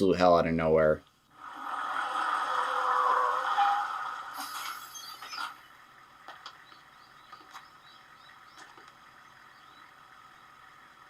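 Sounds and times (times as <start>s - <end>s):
faint bird chirps: 3.2s - 5.9s, 6.5s - 10.6s.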